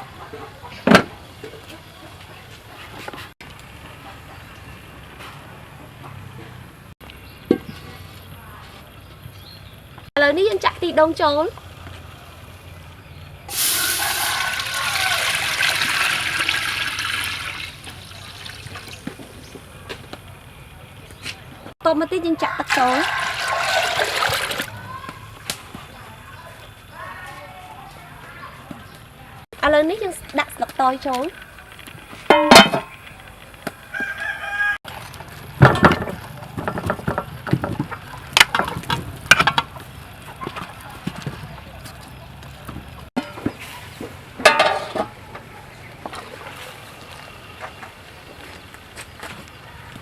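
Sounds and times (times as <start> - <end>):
water gushing into vessel: 13.5 - 19.0, 22.7 - 24.8
rooster crowing: 13.6 - 15.6, 22.4 - 24.3, 33.8 - 34.9.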